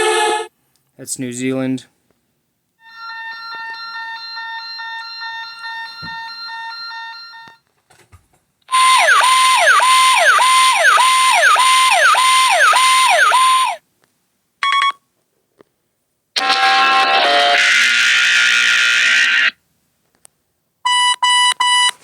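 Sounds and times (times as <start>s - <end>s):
electronic siren tone: 8.7s - 13.8s, 16.4s - 19.5s.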